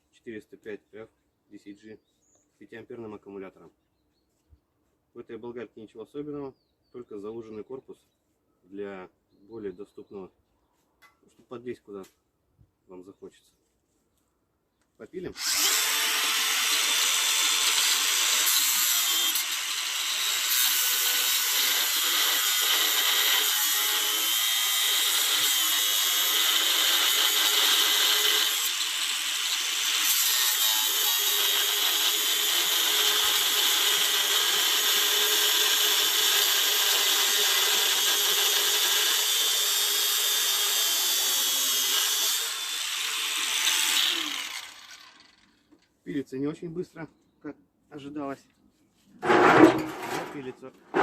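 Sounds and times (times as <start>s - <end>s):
angle grinder cutting: 15.4s - 45.6s.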